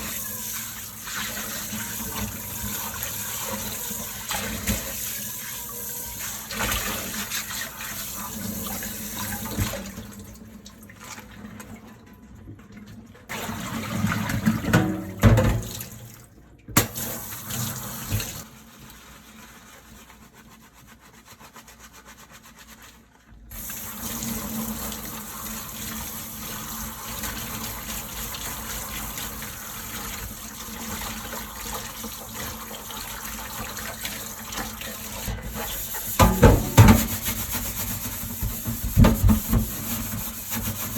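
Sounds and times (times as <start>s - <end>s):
tap running into a sink: 14.2s - 16.1s, 16.7s - 18.4s, 34.5s - 40.9s
dishes knocking and clattering: 14.6s - 15.8s, 36.2s - 37.3s.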